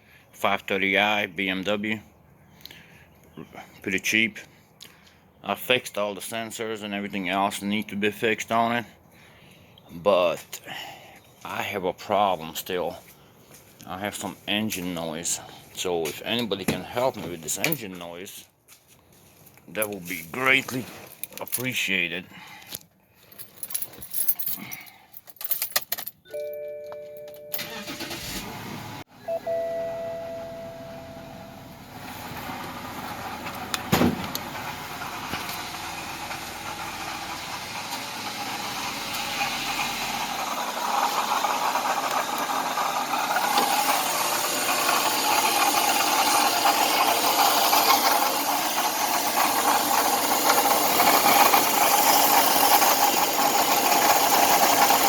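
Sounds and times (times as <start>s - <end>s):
car engine with high screech: 30.2s - 55.0s.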